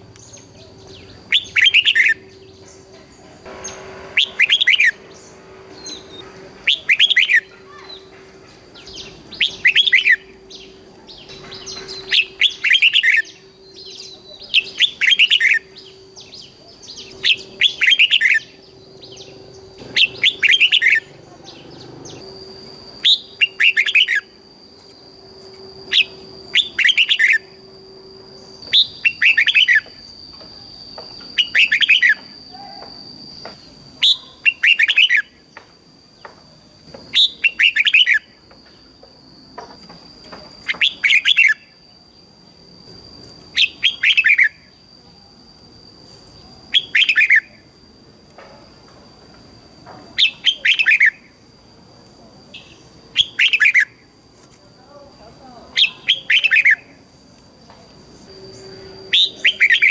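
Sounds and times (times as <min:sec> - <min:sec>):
bulbul singing warbled phrases: 0:00.2 - 0:24.4, 0:25.9 - 0:27.6, 0:28.4 - 0:30.0, 0:30.6 - 0:35.4, 0:50.2 - 0:51.4, 0:54.8 - 0:57.0, 0:58.3 - 0:59.9.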